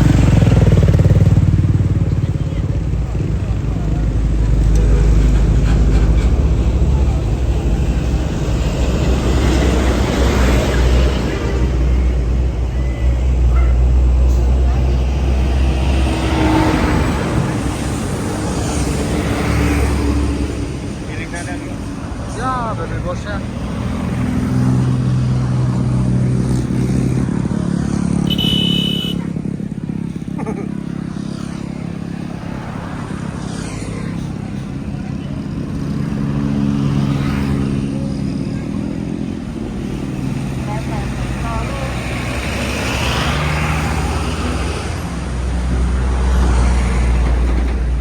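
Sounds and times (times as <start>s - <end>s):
diesel bus engine humming: 0.0s - 48.0s
short high beep: 28.2s - 29.2s.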